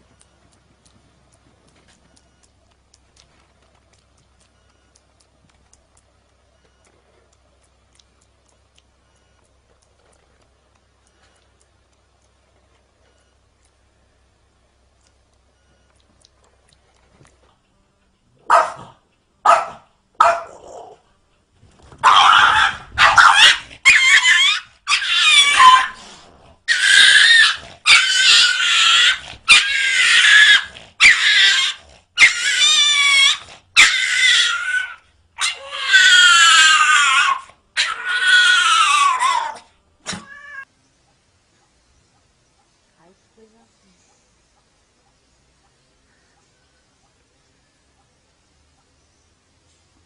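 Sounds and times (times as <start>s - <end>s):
pet animal wailing: 22.0s - 40.7s.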